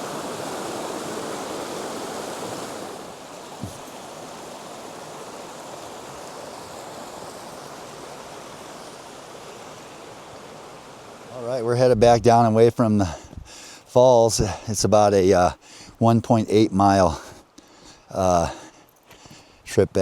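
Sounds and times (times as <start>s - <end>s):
waterfall rushing: 0.0s - 14.7s
short low thump: 3.6s - 3.9s.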